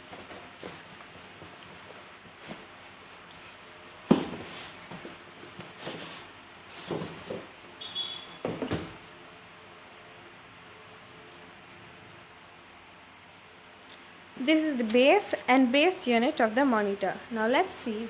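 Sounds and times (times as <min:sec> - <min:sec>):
brief squeak: 0:07.8 - 0:08.4.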